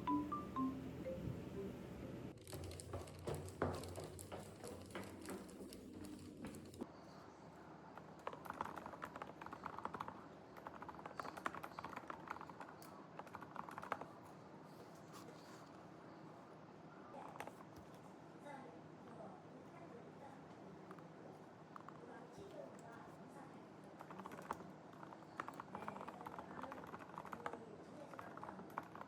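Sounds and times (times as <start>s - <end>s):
low background hum: 0.0s - 29.0s
typing on computer keyboard: 8.0s - 14.4s, 23.8s - 29.0s.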